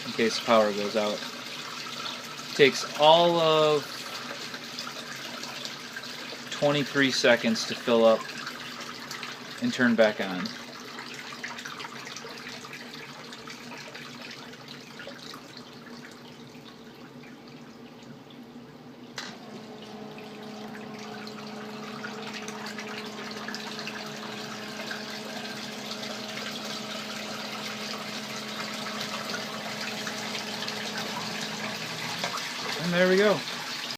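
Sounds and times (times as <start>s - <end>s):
pump motor humming: 0.0s - 33.9s.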